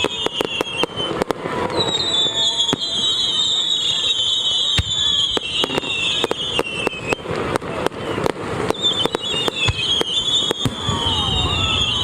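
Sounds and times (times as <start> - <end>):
fireworks banging: 0.0 - 12.0
high wavering whistling: 8.6 - 12.0.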